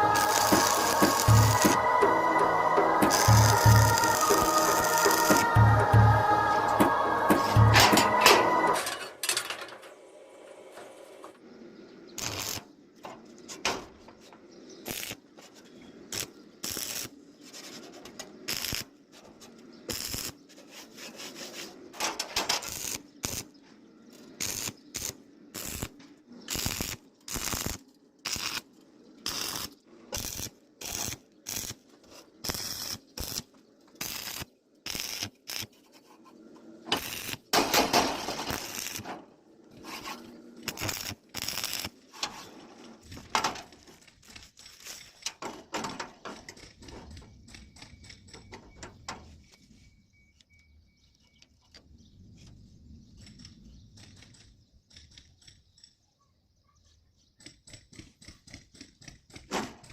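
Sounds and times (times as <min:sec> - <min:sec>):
scraping strokes on metal: 0:00.0 - 0:09.7, 0:29.2 - 0:43.6.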